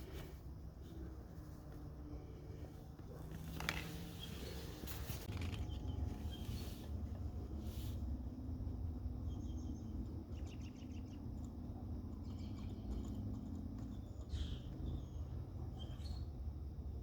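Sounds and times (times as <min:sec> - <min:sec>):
low background hum: 0:00.0 - 0:17.0
faint bird chirps: 0:03.1 - 0:07.0, 0:09.1 - 0:16.4.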